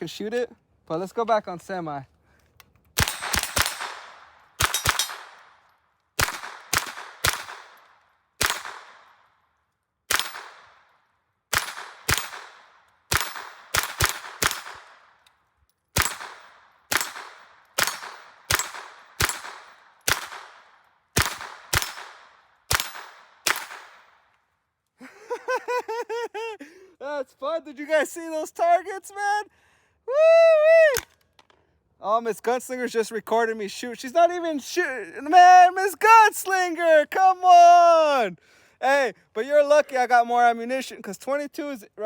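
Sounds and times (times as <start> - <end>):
rifle gunshots with echo: 3.0 - 5.6, 6.2 - 9.3, 10.1 - 10.9, 11.5 - 15.2, 16.0 - 24.1.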